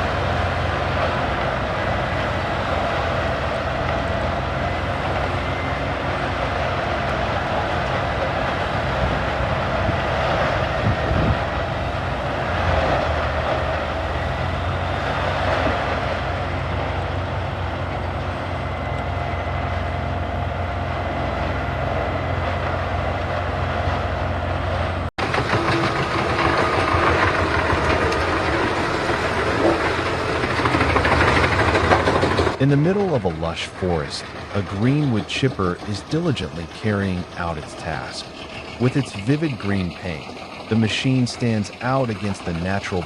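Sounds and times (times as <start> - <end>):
wood grinder running: 0.0 - 33.2.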